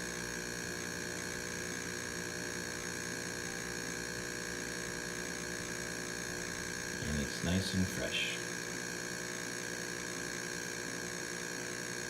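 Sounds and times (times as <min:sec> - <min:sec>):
coffee machine motor hum: 0:00.0 - 0:12.0.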